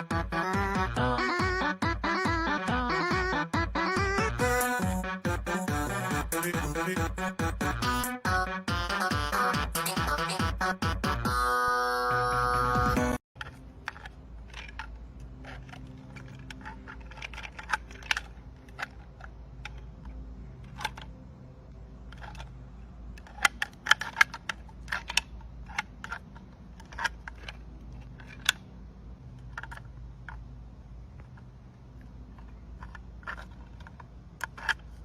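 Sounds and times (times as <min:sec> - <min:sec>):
low steady hum: 0:13.4 - 0:35.0.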